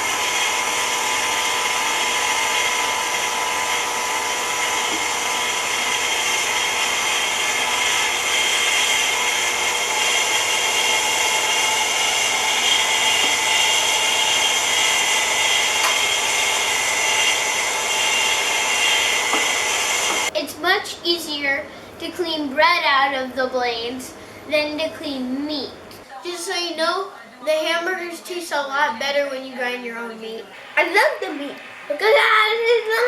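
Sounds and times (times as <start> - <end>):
stand mixer motor whining: 0.0 - 20.3, 30.5 - 33.0.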